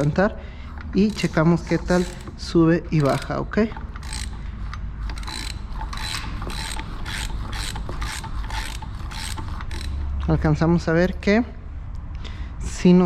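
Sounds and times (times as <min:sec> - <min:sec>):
ratchet wrench clicking: 0:00.0 - 0:10.4.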